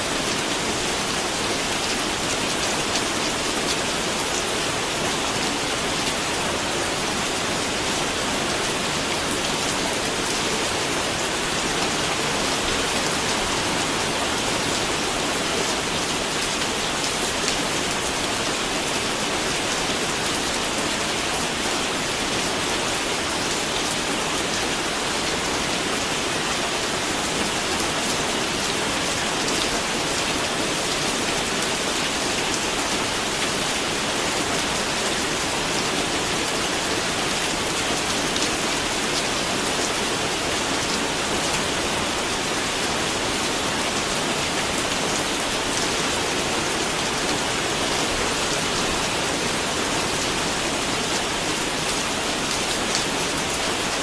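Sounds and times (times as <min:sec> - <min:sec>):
steady rain pattering: 0:00.0 - 0:54.0.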